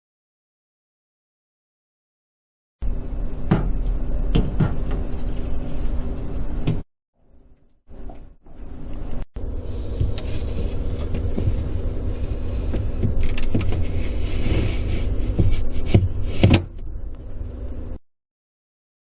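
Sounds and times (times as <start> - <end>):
fridge shelf scraping on rails: 9.6 - 16.8.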